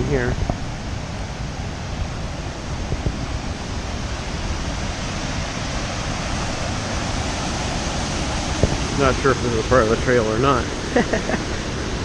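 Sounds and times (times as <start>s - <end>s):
waterfall rushing: 0.0s - 12.0s.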